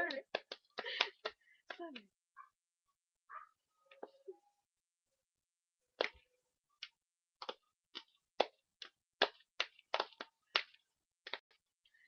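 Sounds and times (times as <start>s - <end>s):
sharp hand claps: 0.0s - 2.1s, 6.0s - 6.2s, 6.8s - 11.6s.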